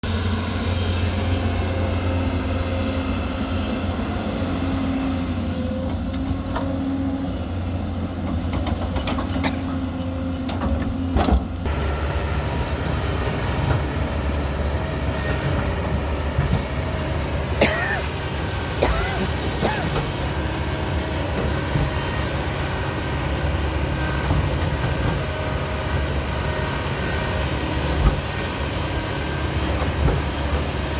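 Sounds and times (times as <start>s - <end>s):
diesel engine running: 0.0s - 30.9s.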